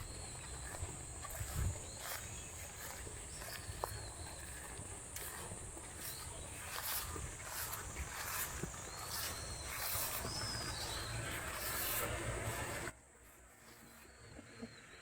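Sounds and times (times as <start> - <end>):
wind rumble on microphone: 0.0 - 4.6
footsteps on a path: 0.0 - 14.0.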